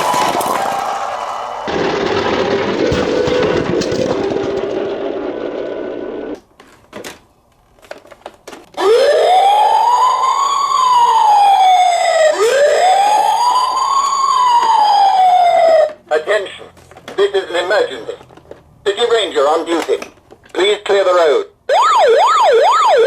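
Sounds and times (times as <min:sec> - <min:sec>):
noisy rattle: 0:01.7 - 0:06.4
toy siren wailing: 0:08.8 - 0:16.0, 0:21.7 - 0:23.0.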